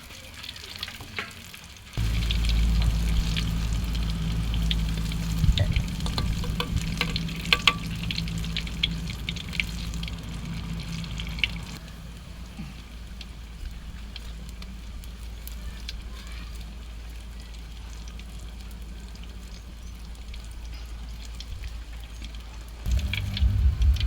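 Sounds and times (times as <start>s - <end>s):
bananas sizzling in hot oil: 0.0s - 24.0s
steady low hum: 2.0s - 14.1s, 22.9s - 24.0s.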